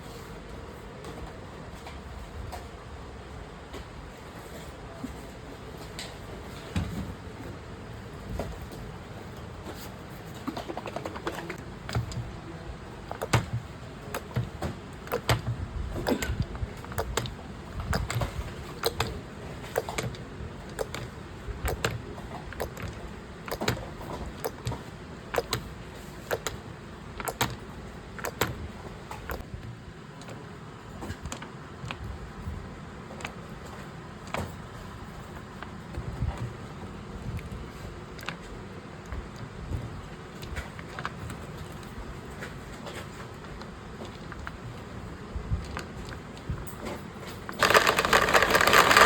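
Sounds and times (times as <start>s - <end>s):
clicks of small hard objects: 47.5s - 49.0s.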